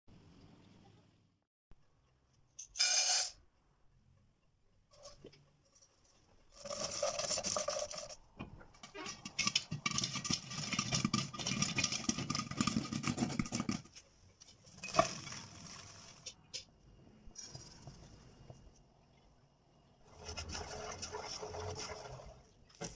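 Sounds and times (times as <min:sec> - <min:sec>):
popcorn popping in a pot: 0:06.6 - 0:13.9.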